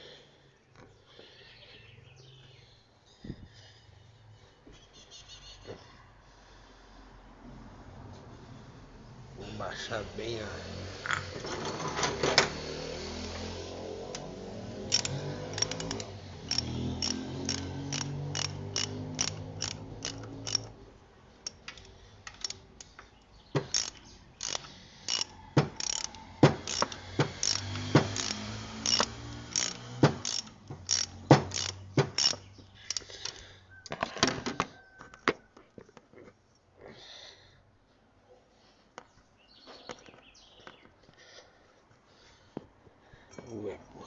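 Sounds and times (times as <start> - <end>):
ratchet wrench clicking: 14.0 - 20.8, 21.4 - 33.4.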